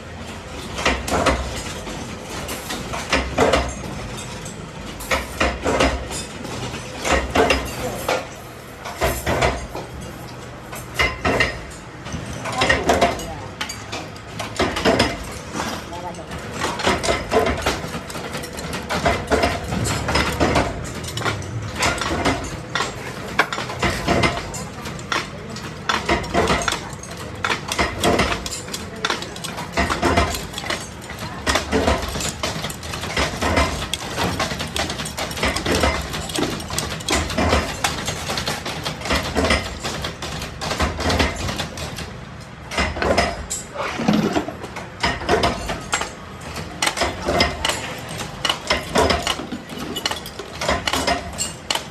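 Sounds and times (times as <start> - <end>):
metal parts clinking: 12.3 - 42.0, 43.0 - 51.9.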